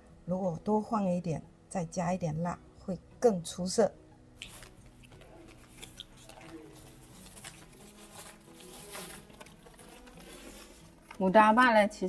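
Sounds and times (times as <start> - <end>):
takeaway packaging rustling: 4.4 - 12.0.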